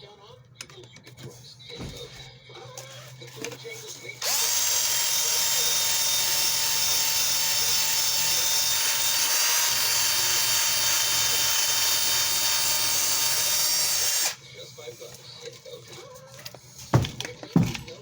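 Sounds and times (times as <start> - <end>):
electric drill motor whine: 4.2 - 14.4.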